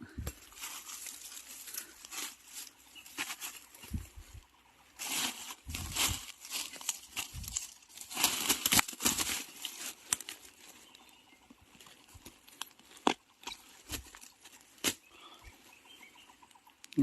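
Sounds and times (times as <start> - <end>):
dry leaves rustling and crackling: 0.3 - 15.1
bamboo shoots snapping: 5.0 - 11.0, 12.0 - 15.1.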